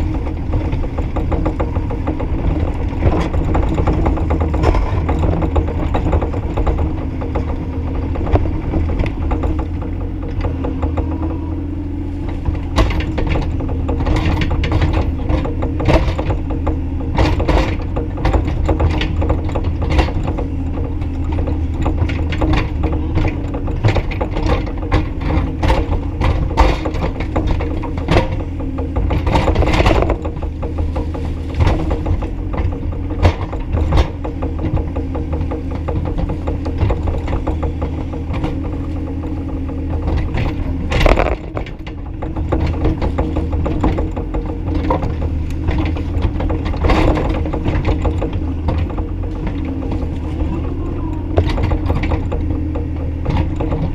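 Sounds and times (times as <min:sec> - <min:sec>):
excavator diesel engine running: 0:00.0 - 0:53.9
machine knocks and clatter: 0:00.0 - 0:53.9.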